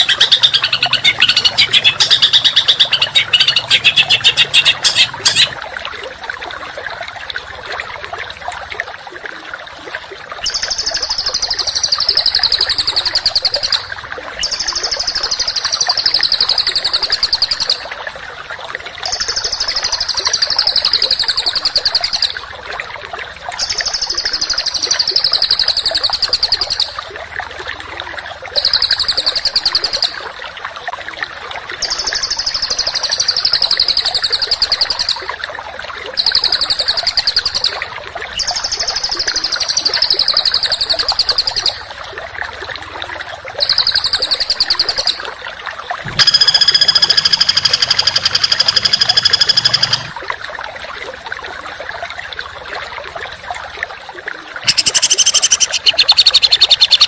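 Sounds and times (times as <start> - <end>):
songbird harsh trills: 0.0 - 5.6, 46.1 - 50.1, 54.7 - 57.0.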